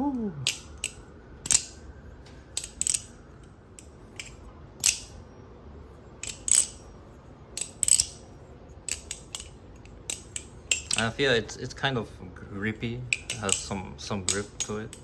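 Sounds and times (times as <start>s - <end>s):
butterfly knife metallic clacks: 7.6s - 8.2s, 8.9s - 11.2s, 13.1s - 15.0s.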